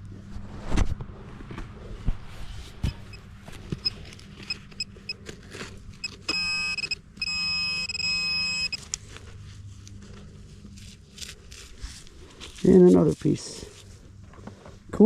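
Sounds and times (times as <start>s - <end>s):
metal detector beeps: 2.8s - 3.2s, 3.8s - 5.2s, 6.0s - 8.9s
metal detector buzzing tones: 2.8s - 3.2s, 3.8s - 5.2s, 5.9s - 8.9s.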